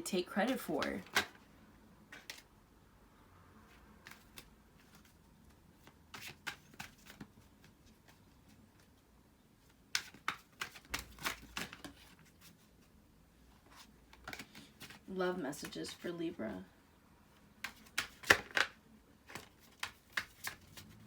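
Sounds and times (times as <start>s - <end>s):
cards being shuffled: 4.0s - 5.2s, 5.8s - 8.2s, 9.9s - 12.7s, 13.6s - 16.1s, 17.6s - 21.0s.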